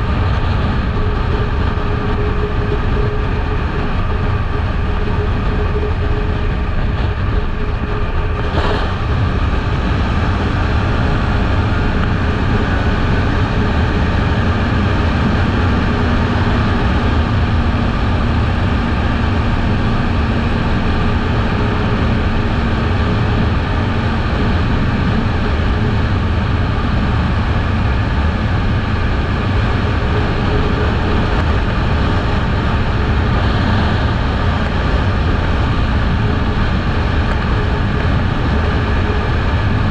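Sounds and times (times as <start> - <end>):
motorcycle engine running: 0.0 - 39.9
wind noise: 0.0 - 39.9.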